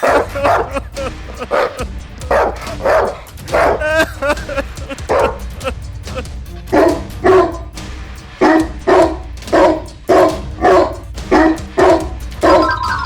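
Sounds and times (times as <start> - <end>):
dog barking: 0.0 - 4.0, 5.0 - 5.4, 6.7 - 7.7, 8.4 - 13.0
background music: 0.0 - 13.0.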